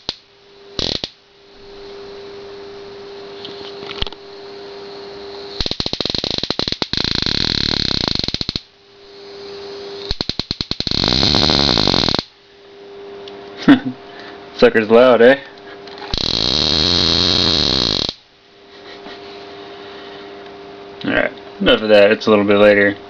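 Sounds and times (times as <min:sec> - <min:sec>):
high-voltage sparks crackling: 0:00.0 - 0:02.0, 0:05.5 - 0:08.7, 0:09.4 - 0:12.4, 0:16.1 - 0:18.3
electrical hum: 0:00.0 - 0:23.0.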